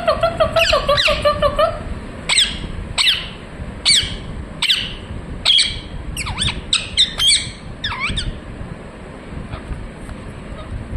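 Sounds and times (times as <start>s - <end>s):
parakeet squawking: 0.0s - 8.4s.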